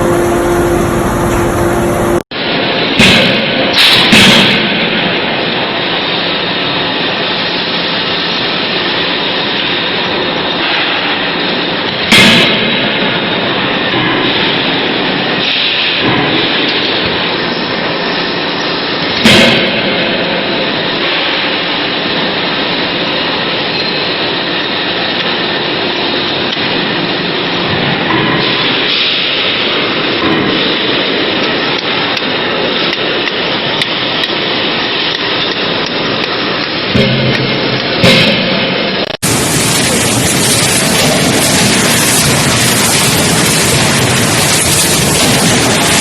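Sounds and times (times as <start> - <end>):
sharp bang: 0.0 - 2.2, 2.9 - 4.8, 36.9 - 46.0
factory machinery running: 0.0 - 46.0.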